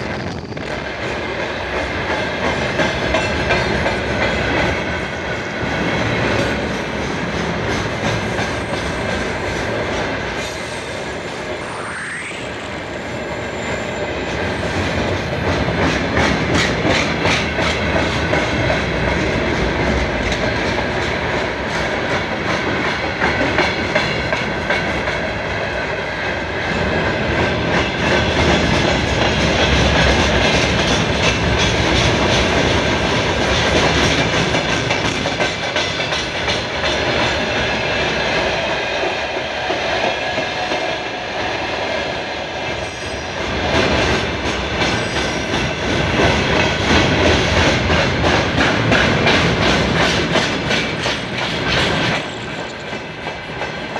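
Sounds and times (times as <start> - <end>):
train wheels clacking over rail joints: 0.0 - 10.7, 14.3 - 53.9
train rumble: 0.0 - 53.9
high squealing tones: 10.4 - 14.2.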